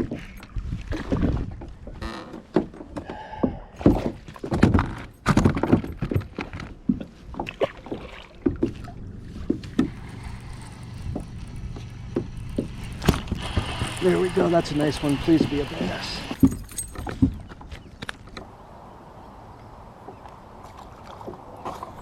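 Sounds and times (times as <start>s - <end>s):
fishing reel whirring: 9.9s - 16.2s
fishing gear clattering: 16.3s - 18.4s.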